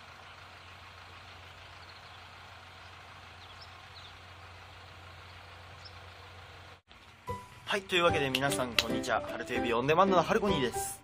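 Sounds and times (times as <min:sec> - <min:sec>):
distant road traffic hum: 0:00.0 - 0:09.0.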